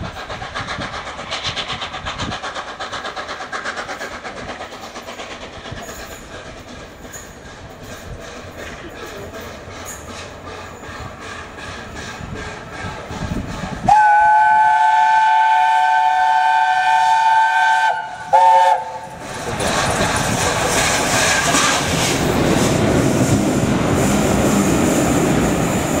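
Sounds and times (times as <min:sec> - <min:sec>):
train rumbling and clattering: 0:00.0 - 0:26.0
steam locomotive whistle: 0:13.8 - 0:19.1.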